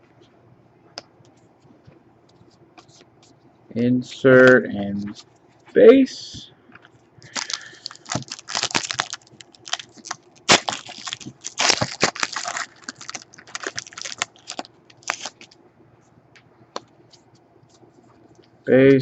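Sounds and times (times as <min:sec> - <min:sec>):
wrapper crinkling and tearing: 0:07.3 - 0:15.6.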